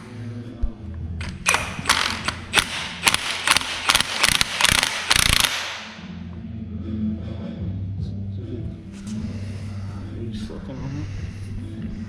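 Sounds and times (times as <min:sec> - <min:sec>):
ratchet wrench clicking: 0:01.2 - 0:05.9.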